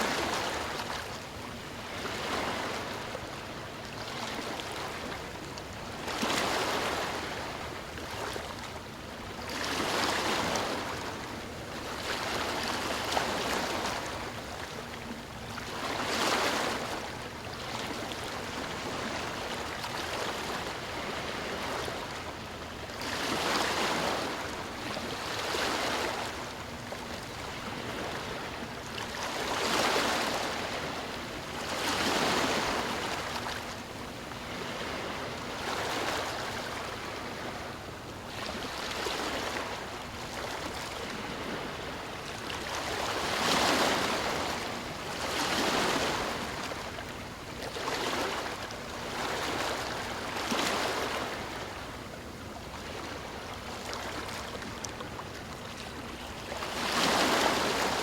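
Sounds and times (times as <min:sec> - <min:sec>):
sea waves washing in: 0:00.0 - 0:58.0.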